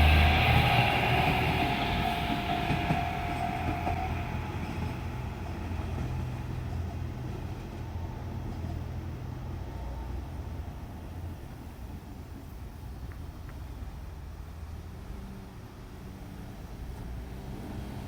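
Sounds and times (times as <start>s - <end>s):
high steady tone: 0.0s - 5.9s
diesel engine hum: 0.0s - 6.3s
train wheel noise: 0.0s - 14.5s.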